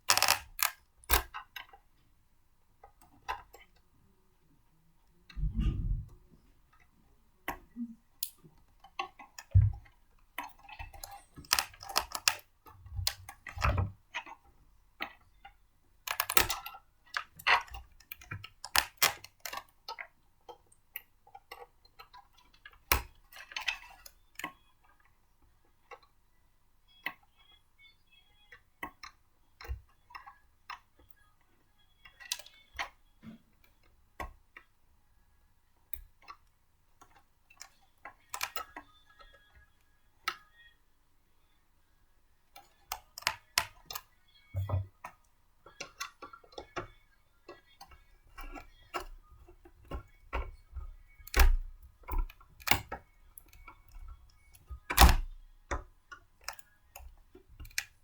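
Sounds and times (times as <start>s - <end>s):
blender parts clicking and knocking: 0.1s - 1.4s.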